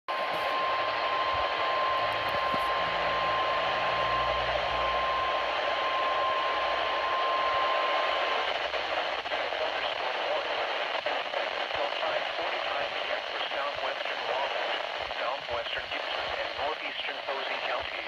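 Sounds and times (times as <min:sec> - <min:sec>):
steady high alarm tone: 0:00.1 - 0:08.4
radio hiss: 0:00.1 - 0:18.0.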